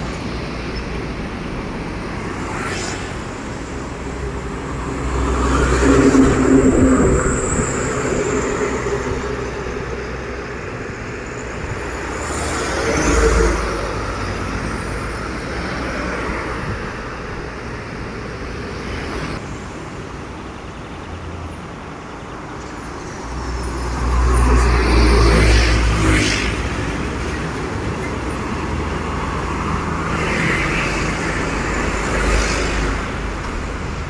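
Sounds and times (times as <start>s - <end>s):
heavy vehicle low rumble: 0.0s - 15.7s
road traffic: 0.0s - 34.0s
vehicle passing by: 2.0s - 16.9s, 23.2s - 34.0s.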